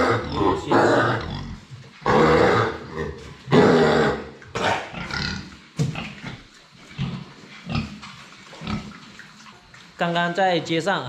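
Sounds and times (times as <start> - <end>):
pigs squealing harshly: 0.0 - 6.3.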